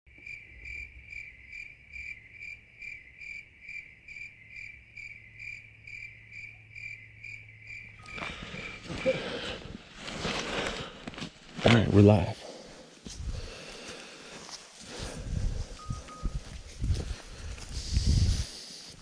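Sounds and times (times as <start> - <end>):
cricket chirping: 0.1 - 9.6.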